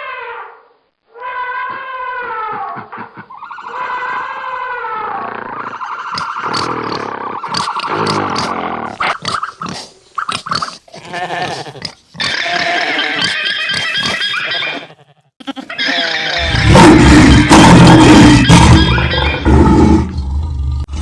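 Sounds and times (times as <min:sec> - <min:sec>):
rasping pig call: 0:01.2 - 0:20.2
deep roar: 0:16.4 - 0:21.0.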